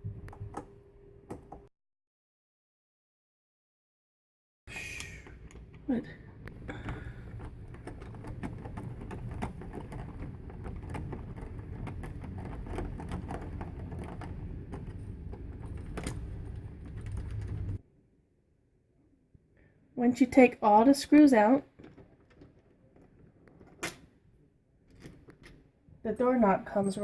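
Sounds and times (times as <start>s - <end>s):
low handling rumble: 5.5s - 17.8s.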